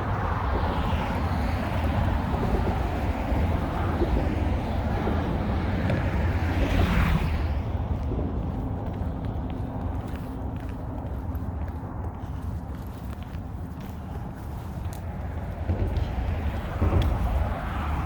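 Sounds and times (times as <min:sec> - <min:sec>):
highway traffic rumble: 0:00.0 - 0:18.0
vehicle passing: 0:00.0 - 0:18.0.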